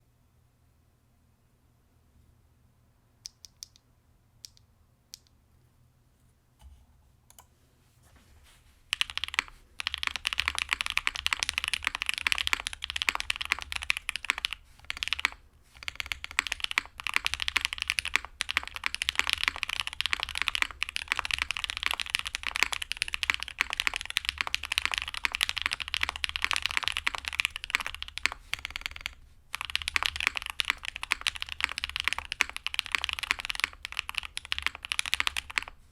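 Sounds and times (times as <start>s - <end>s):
mechanical keyboard typing: 8.9s - 35.8s.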